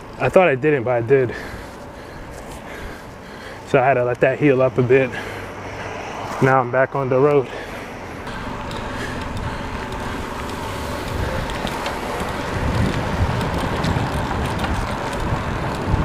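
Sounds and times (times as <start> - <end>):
cars passing: 0.0 - 16.0
road and wind noise: 0.0 - 16.0.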